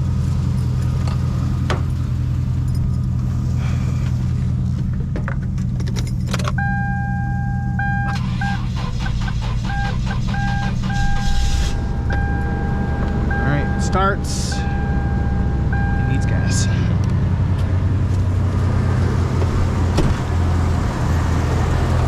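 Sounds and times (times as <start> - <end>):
keys jangling in ignition: 2.6 - 3.0, 5.4 - 6.7
engine cranking: 8.0 - 16.1
steady low hum: 11.0 - 18.8
two-note warning chime: 12.0 - 16.7.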